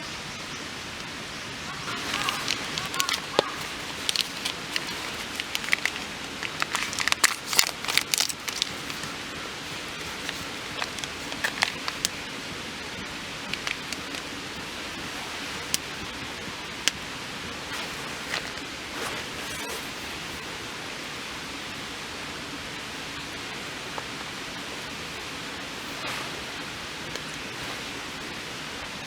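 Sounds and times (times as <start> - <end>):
steady rain hissing: 0.0 - 29.0
raindrops ticking close by: 0.9 - 19.0.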